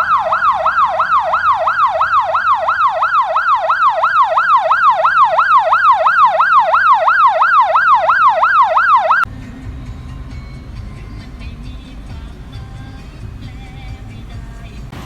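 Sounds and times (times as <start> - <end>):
siren yelp: 0.0 - 9.3.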